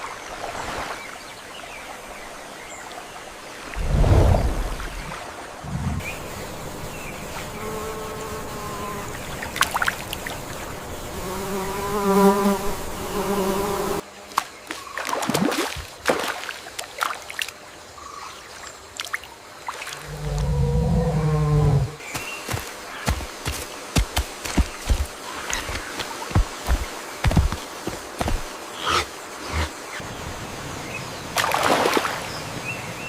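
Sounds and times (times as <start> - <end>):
insect buzzing: 3.8 - 14.8, 19.6 - 30.2.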